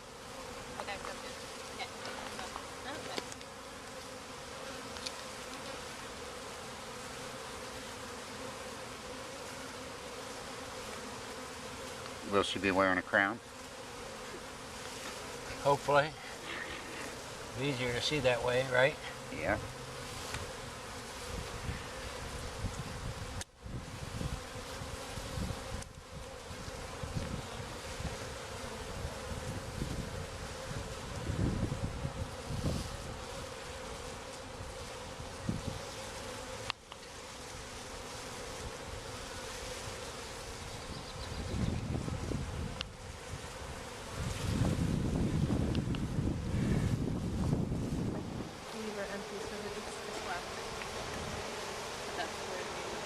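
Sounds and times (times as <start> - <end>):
honeybees buzzing: 0.0 - 53.0.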